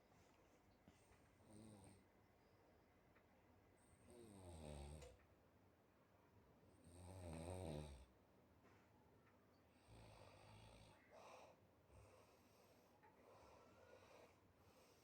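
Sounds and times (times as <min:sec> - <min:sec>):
man snoring: 0:07.0 - 0:08.1
soft breaths: 0:09.7 - 0:15.0.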